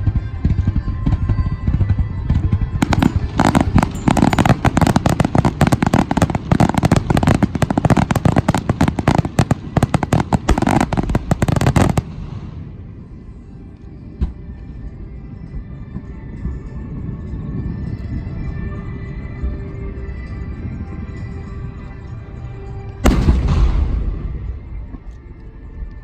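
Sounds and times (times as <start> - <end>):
fireworks bangs and crackles: 0.0 - 13.0, 23.0 - 25.2
music playing: 0.0 - 26.0.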